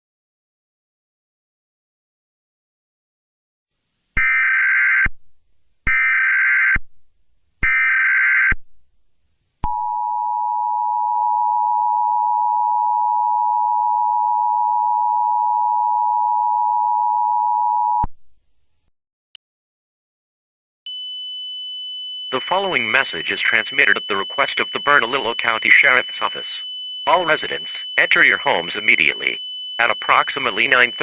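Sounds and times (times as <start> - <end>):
digital data tone bursts: 22.4 - 31.0
two-tone attention signal: 22.4 - 31.0.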